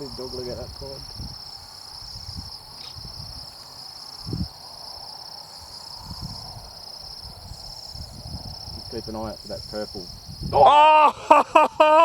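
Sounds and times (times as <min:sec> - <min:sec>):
crickets trilling: 0:00.0 - 0:12.0
higher insect chirping: 0:00.0 - 0:12.0.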